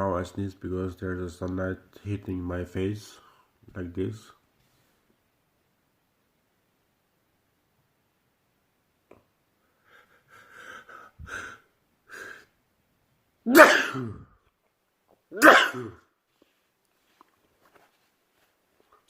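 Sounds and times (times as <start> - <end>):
short catching breaths: 9.7 - 12.6
man sneezing loudly: 13.5 - 14.4, 15.3 - 16.1.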